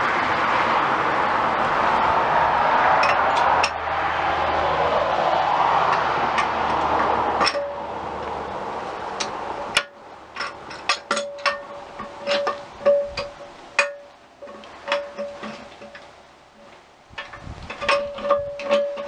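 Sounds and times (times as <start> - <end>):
rush of noise: 0.0 - 10.8.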